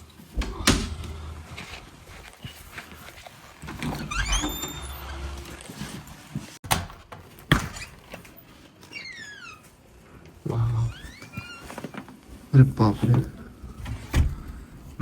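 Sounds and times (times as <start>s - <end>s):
door squeaking: 3.6s - 5.6s, 8.9s - 9.7s.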